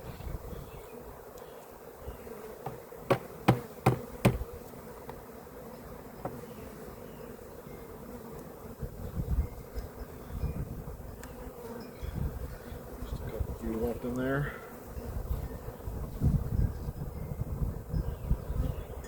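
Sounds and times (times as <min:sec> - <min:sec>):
bees buzzing: 0:00.0 - 0:19.0
sharp knocks: 0:02.6 - 0:04.5.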